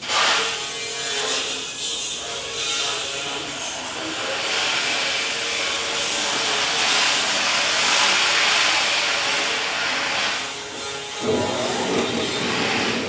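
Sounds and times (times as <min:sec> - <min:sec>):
band saw running: 0:10.3 - 0:13.0.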